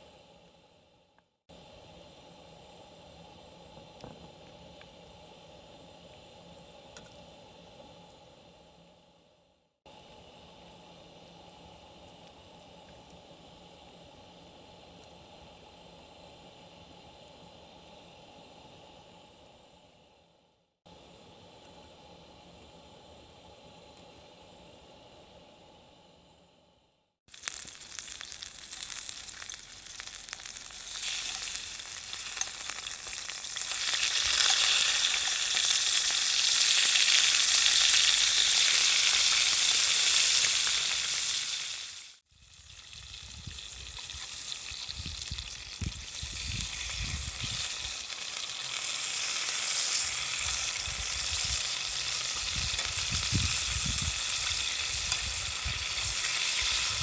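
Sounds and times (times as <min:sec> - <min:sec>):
food sizzling in a hot pan: 0:27.3 - 0:57.0.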